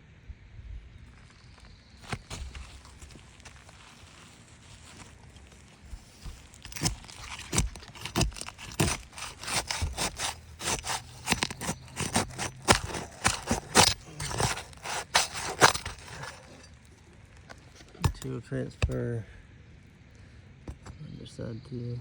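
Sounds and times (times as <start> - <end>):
roof shingles being pried up: 2.0 - 19.0.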